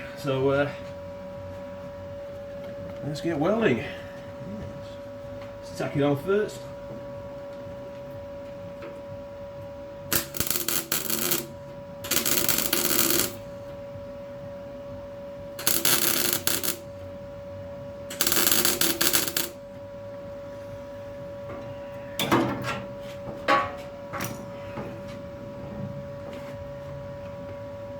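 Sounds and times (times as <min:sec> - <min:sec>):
steady hum: 0:00.0 - 0:27.9
welder crackling bursts: 0:10.1 - 0:13.4, 0:15.6 - 0:16.9, 0:18.1 - 0:19.6.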